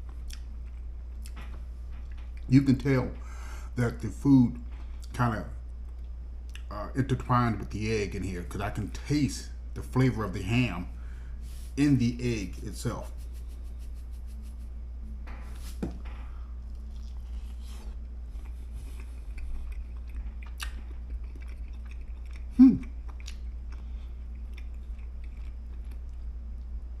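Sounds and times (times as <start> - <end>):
man chewing food: 0.0 - 2.5, 15.4 - 27.0
steady low hum: 0.0 - 27.0
short hummed voice: 22.6 - 23.0.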